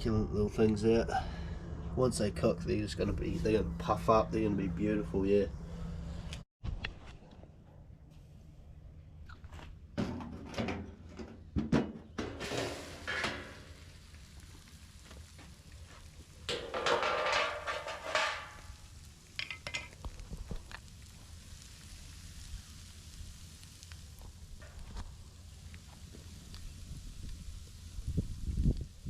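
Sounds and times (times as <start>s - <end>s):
metal clattering and scraping: 10.0s - 13.8s, 16.4s - 20.0s
hiss: 12.4s - 16.6s, 20.3s - 29.0s.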